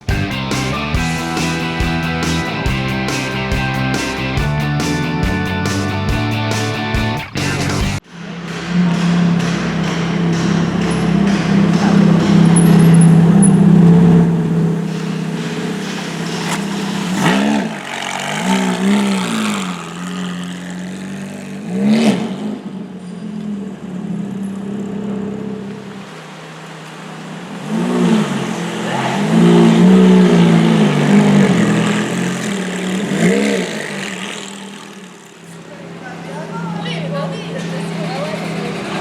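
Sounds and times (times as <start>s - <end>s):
car engine idling with throttle blips: 8.0s - 39.0s.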